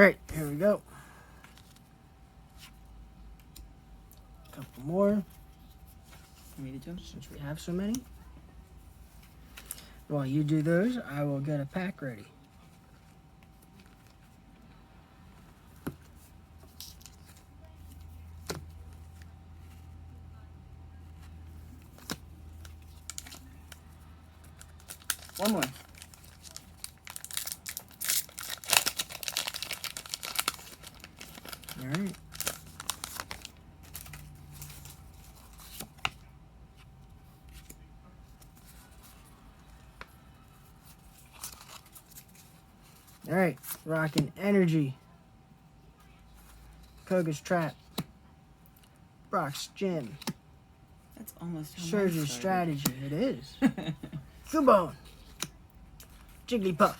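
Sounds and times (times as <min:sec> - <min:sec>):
low steady hum: 0:00.0 - 0:56.9
trading cards rustling: 0:21.0 - 0:44.8, 0:51.7 - 0:56.9.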